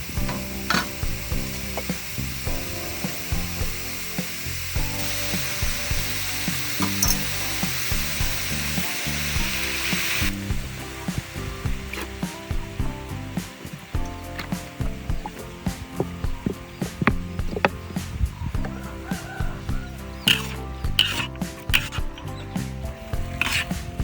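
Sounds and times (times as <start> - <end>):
eggs sizzling in hot oil: 0.0 - 24.0
utensil scraping pan: 18.8 - 24.0.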